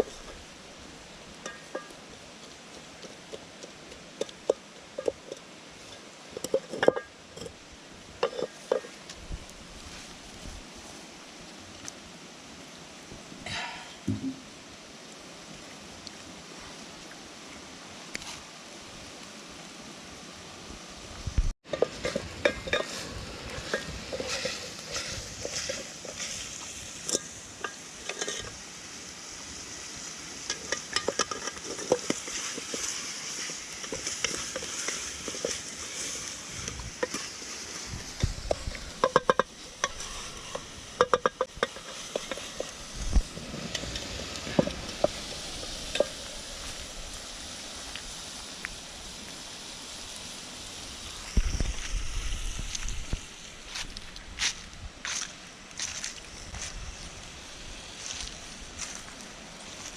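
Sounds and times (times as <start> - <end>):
meat sizzling in a pot: 0.0 - 10.6, 21.4 - 53.8
spoon scraping and clinking on pot: 8.2 - 9.0, 21.7 - 28.6, 30.4 - 36.1, 38.9 - 42.7
sharp knocks: 14.0 - 14.4.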